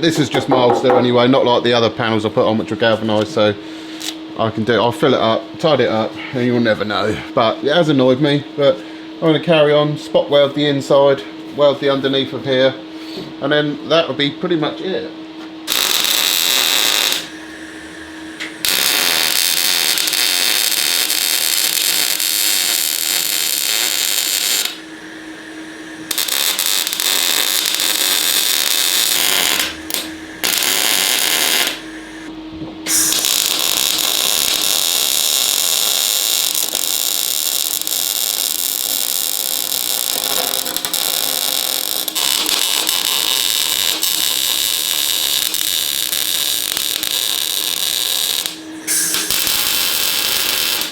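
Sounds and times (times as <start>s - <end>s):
faint steady hum: 0.0s - 50.9s
welder crackling hiss: 15.6s - 32.3s, 32.9s - 50.9s.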